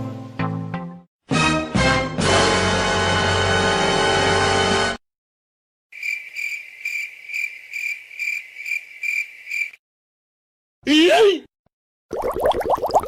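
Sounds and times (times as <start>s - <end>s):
crickets chirping: 5.9s - 9.8s.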